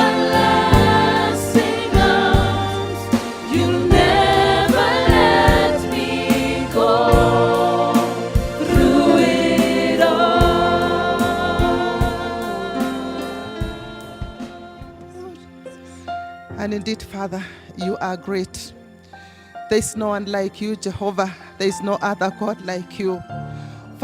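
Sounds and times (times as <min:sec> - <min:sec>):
steady drum beat: 0:00.0 - 0:15.2
choir singing gospel song: 0:00.0 - 0:15.4
band playing: 0:00.0 - 0:15.5.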